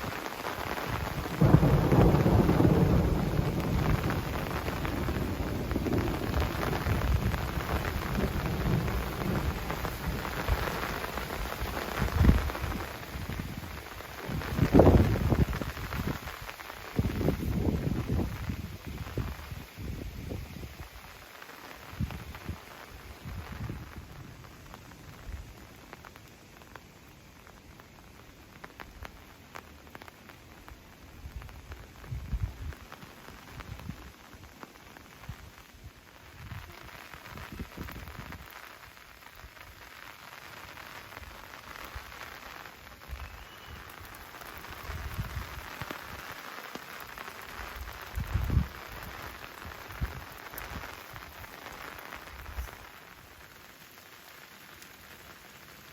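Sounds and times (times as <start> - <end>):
rain falling: 0.0 - 55.9
low rumble of thunder: 0.8 - 16.4, 47.6 - 51.4.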